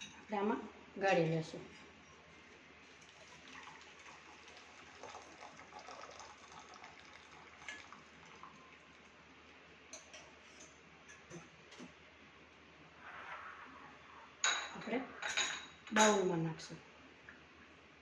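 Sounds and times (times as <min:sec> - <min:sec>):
liquid trickling through a strainer: 0:02.8 - 0:09.2.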